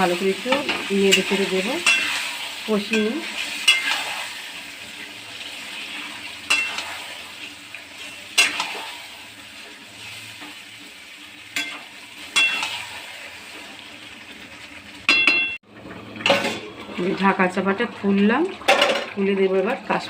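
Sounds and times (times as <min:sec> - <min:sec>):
meat sizzling in hot oil: 0:00.0 - 0:20.0
metal spatula scraping pan: 0:00.4 - 0:04.8, 0:05.4 - 0:10.6, 0:11.5 - 0:13.6.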